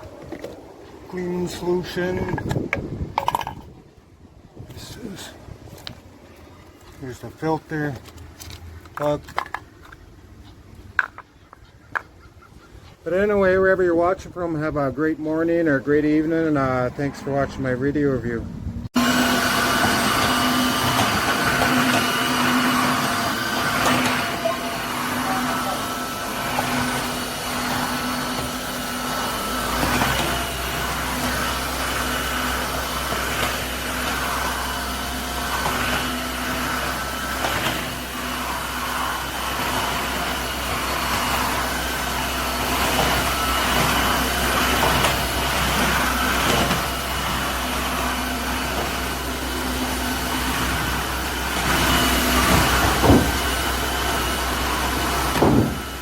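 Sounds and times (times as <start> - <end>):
floor vacuum running: 19.0 - 56.0.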